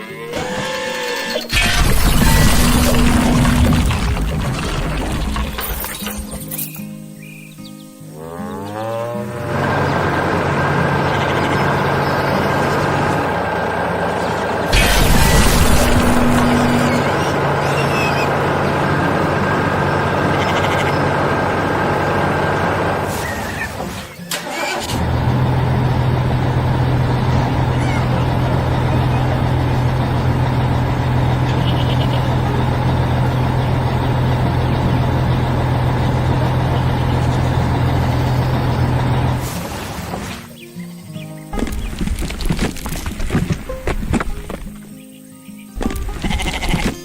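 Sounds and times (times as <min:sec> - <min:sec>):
heavy vehicle engine running: 0:01.4 - 0:06.5, 0:09.3 - 0:40.6.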